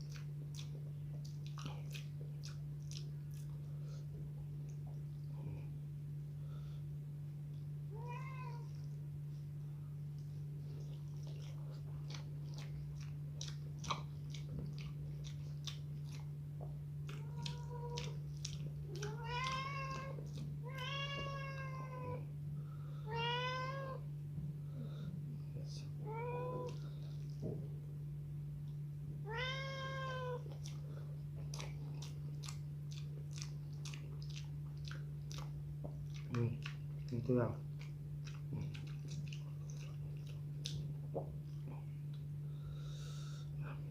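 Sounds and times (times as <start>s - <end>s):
low electrical hum: 0.0s - 43.9s
cat meowing: 7.9s - 8.8s, 18.9s - 22.2s, 23.1s - 24.0s, 29.2s - 30.5s
person chewing and biting: 10.7s - 20.6s, 30.4s - 42.2s.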